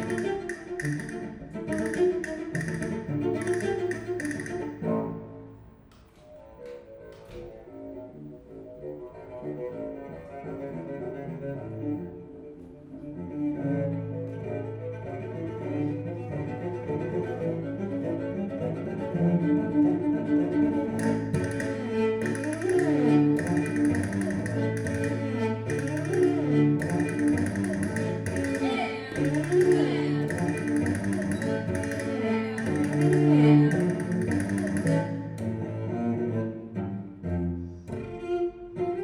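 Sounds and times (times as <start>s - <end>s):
bright high rhythmic layer: 0.0s - 4.8s, 21.0s - 35.3s
deep bowed strings: 0.0s - 6.0s, 8.0s - 39.0s.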